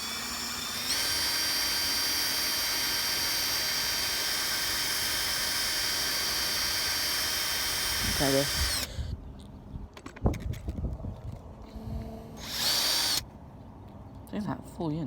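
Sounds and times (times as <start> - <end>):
electric drill whining: 0.0 - 9.1, 11.7 - 13.2.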